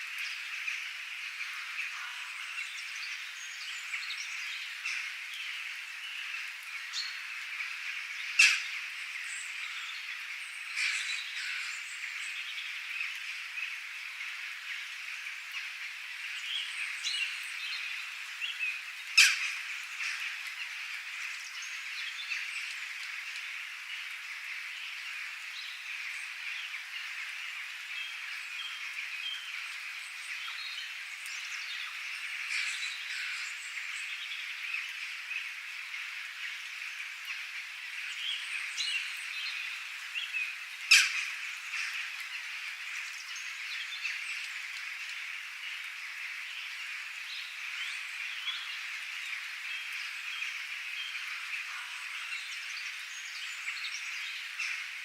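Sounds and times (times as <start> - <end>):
birds chirping and calling: 6.1 - 13.2, 16.4 - 23.1, 28.0 - 35.5, 38.0 - 44.6
chorus of small high calls: 40.8 - 42.2.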